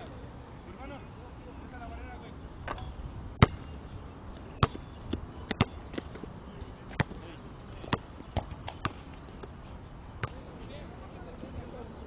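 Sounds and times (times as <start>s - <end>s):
basketballs bouncing on court: 3.4s - 3.7s, 4.6s - 4.8s, 5.5s - 6.2s.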